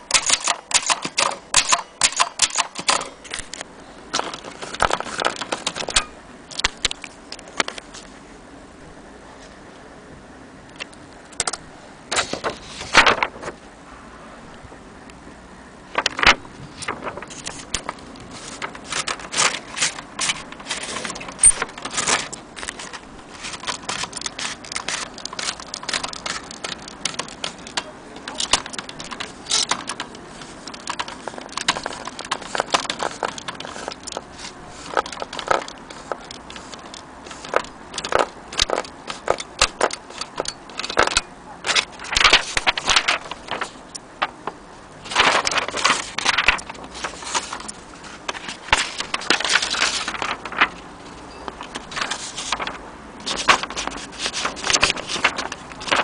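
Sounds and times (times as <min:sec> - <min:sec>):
metal mechanism clicking: 0:00.0 - 0:03.6.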